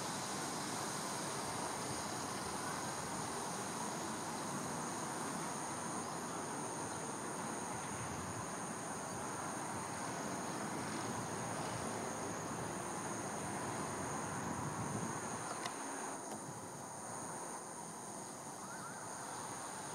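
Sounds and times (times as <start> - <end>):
insects trilling: 0.0 - 19.9.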